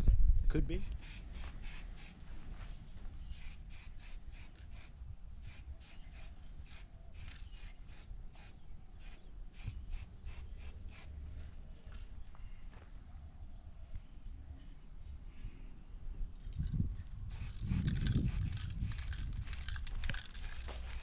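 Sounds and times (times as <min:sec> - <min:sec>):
spray paint can hissing: 0:00.8 - 0:02.2, 0:03.2 - 0:11.1, 0:17.3 - 0:21.0.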